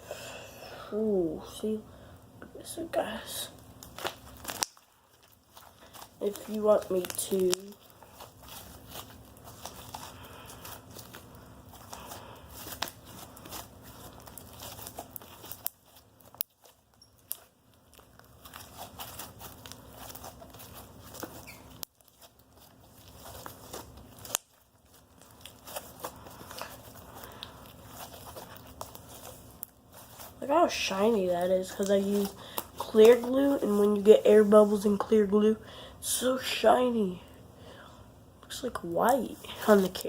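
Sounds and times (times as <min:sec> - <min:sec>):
slime squeezed clicking and crackling: 0:03.8 - 0:11.9, 0:12.6 - 0:30.9.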